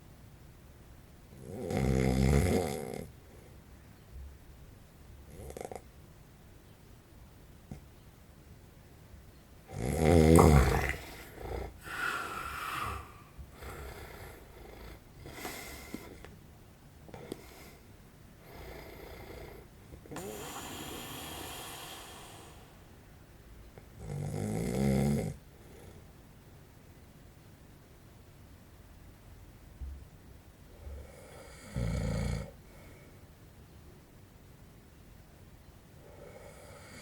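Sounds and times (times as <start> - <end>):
man snoring: 1.5 - 3.1, 9.7 - 15.4, 20.2 - 22.7.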